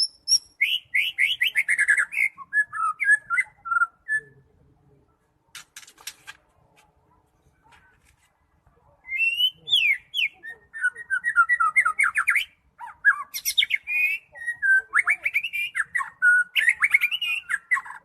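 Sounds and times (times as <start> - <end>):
bird singing whistles and trills: 0.0 - 4.4, 9.0 - 18.0.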